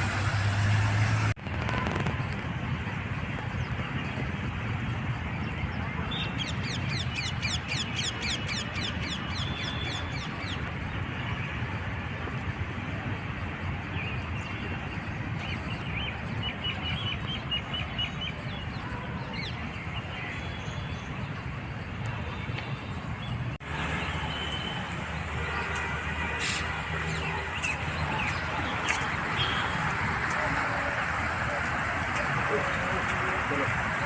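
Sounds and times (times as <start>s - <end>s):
outdoor background noise: 0.0s - 34.0s
birds chirping: 13.8s - 34.0s.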